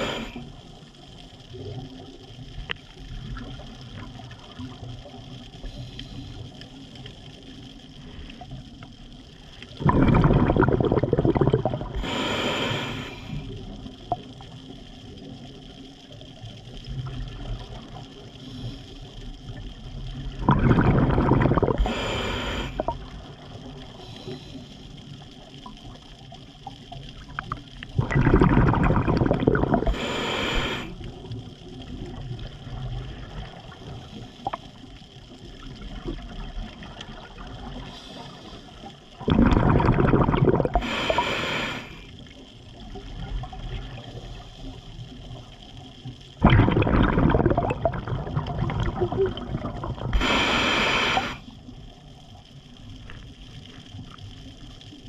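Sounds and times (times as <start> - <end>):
scuba regulator breathing: 0.0 - 0.6, 9.8 - 13.6, 20.6 - 23.1, 23.9 - 25.0, 29.4 - 31.1, 37.8 - 42.2, 50.1 - 51.6
faint underwater hiss: 0.0 - 55.0.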